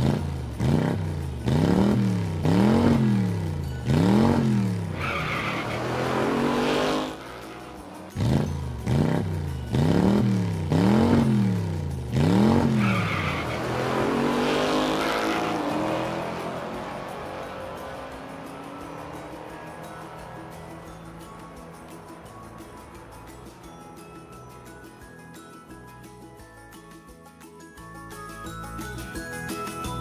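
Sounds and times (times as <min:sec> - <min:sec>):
race car engine revving: 0:00.0 - 0:24.4
tyre screech: 0:04.9 - 0:07.2, 0:12.5 - 0:15.9.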